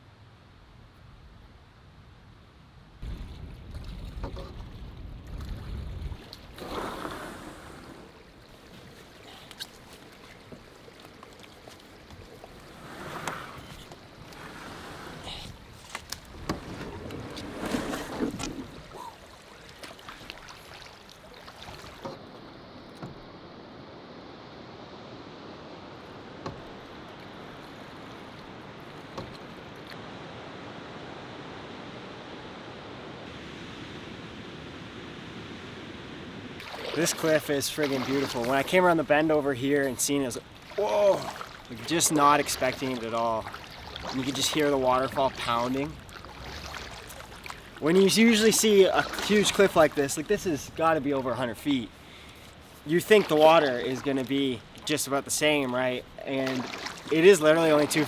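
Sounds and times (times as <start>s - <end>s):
paddle strokes splashing in water: 3.0s - 23.5s, 25.9s - 30.3s, 36.6s - 58.0s.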